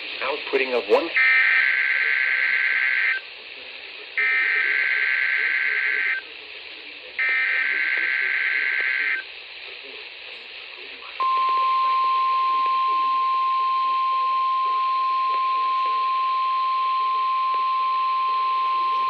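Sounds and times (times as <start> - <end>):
receiver hiss: 0.0 - 19.0
steady alarm beep: 11.2 - 19.0.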